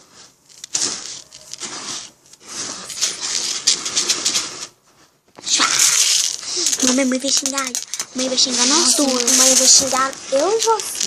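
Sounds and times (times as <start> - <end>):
birdseed rustling and clicking: 0.4 - 1.7, 5.6 - 11.0.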